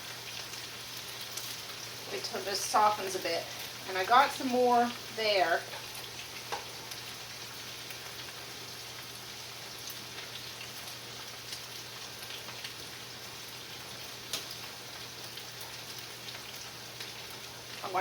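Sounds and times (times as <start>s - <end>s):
meat sizzling in a pan: 0.0s - 18.0s.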